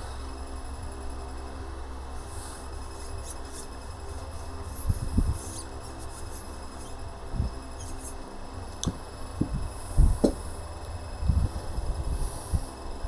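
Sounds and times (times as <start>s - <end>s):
low steady hum: 0.0s - 13.0s
dull knocks of metal parts: 8.8s - 10.5s.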